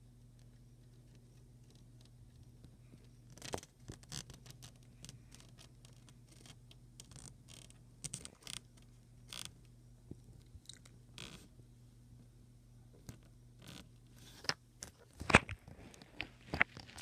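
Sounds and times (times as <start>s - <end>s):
low electrical hum: 0.0s - 17.0s
geckos scratching and crackling: 0.4s - 9.6s, 13.0s - 17.0s.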